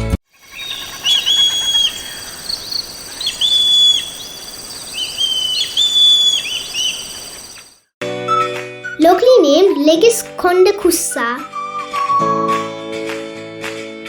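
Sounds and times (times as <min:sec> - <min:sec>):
insects droning: 0:00.3 - 0:07.9
hawk-eagle whistling calls: 0:00.4 - 0:07.8.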